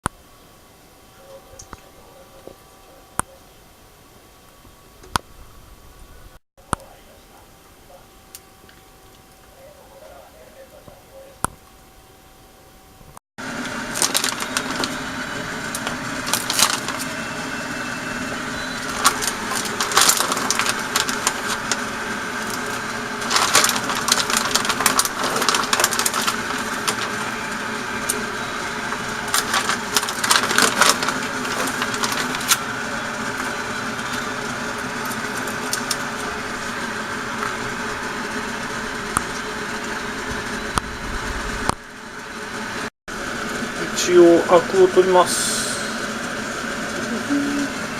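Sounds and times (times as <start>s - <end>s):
pot cooking with hiss and crackles: 13.0s - 47.9s.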